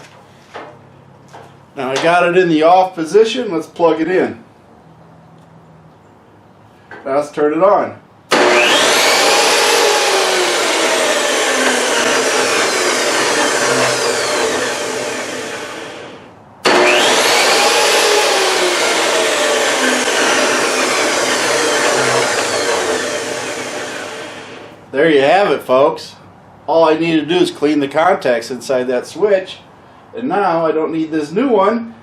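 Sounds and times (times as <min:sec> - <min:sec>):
table saw running and winding down: 0:08.3 - 0:24.8.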